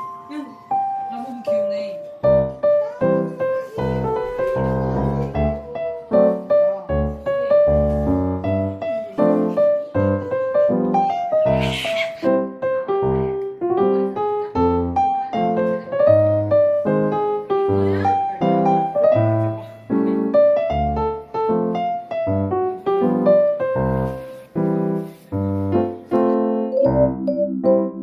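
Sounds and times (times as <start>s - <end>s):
bouncy keyboard tune: 25.4s - 28.0s.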